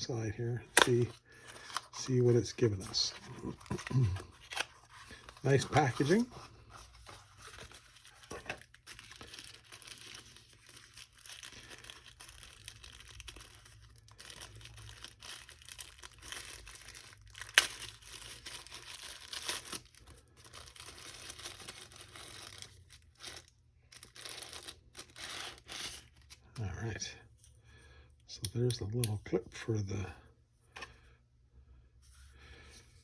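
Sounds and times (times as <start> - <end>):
packaging wrap crinkling and tearing: 0.7 - 26.4
sharp crackle of wrapping: 7.0 - 26.3.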